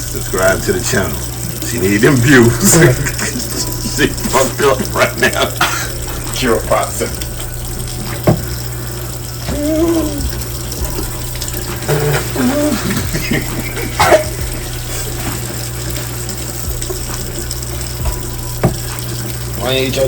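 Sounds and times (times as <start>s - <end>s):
person whimpering in pain: 9.5s - 10.4s, 11.8s - 13.5s
person yelping: 9.5s - 10.4s, 11.9s - 13.2s.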